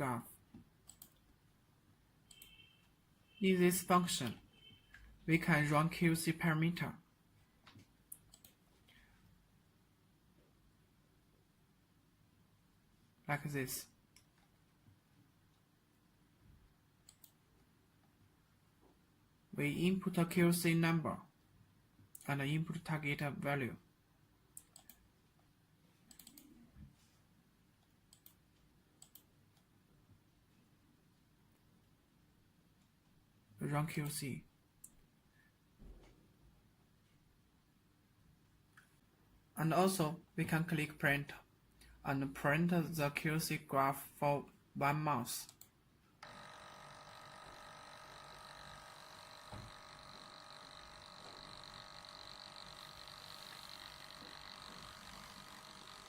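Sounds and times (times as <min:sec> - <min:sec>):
faint mouse clicks: 0:00.5 - 0:01.3, 0:02.2 - 0:02.6, 0:07.6 - 0:09.0, 0:17.0 - 0:17.4, 0:24.6 - 0:25.0, 0:26.1 - 0:26.9, 0:27.8 - 0:29.7
printer mechanical whine: 0:46.2 - 0:56.0.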